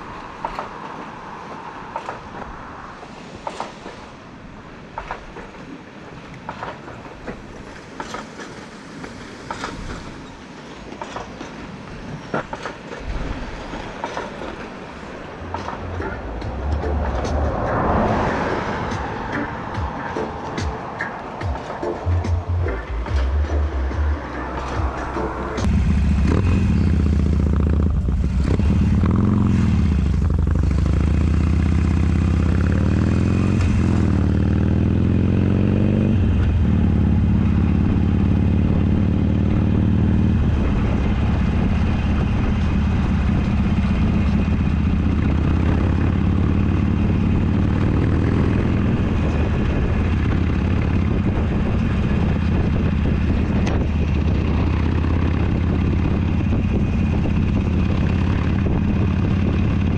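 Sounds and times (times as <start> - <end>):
motorcycle engine accelerating: 21.4 - 59.9.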